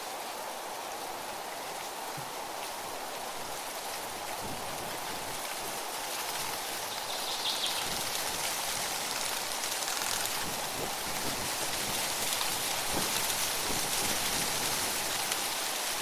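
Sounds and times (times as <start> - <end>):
wind rustling tree leaves: 0.0 - 16.0.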